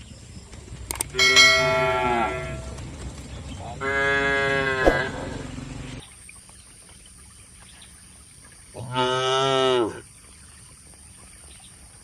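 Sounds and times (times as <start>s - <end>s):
cow mooing: 1.2s - 2.7s, 3.8s - 5.4s.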